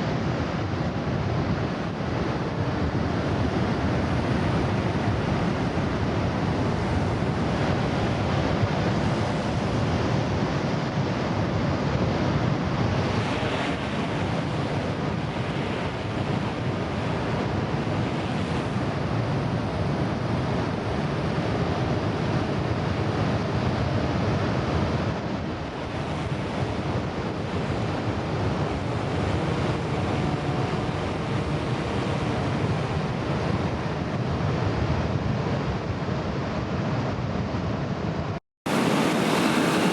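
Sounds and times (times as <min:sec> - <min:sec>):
wind buffeting microphone: 0:00.0 - 0:39.9
waves breaking: 0:38.7 - 0:39.9.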